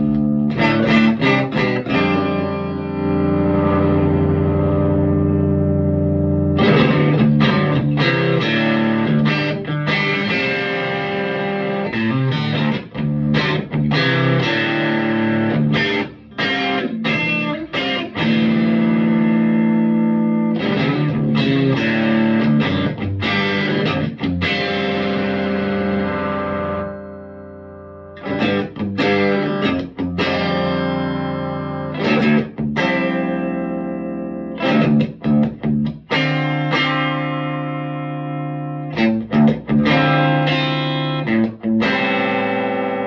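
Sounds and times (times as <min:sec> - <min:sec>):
overdriven electric guitar: 0:00.0 - 0:43.0.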